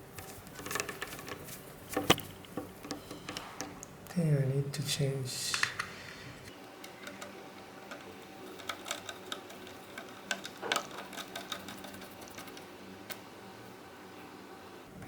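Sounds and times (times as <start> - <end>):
faint steady hum: 0.0 - 15.0
small parts and tools clicking: 6.8 - 12.7.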